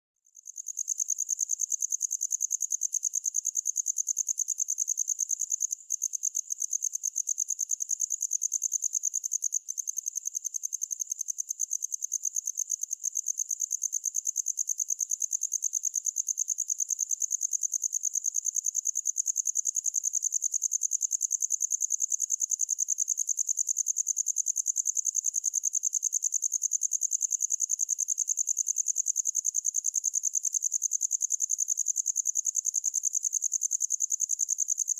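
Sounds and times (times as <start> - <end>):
cricket chirping trill: 0.3 - 34.9.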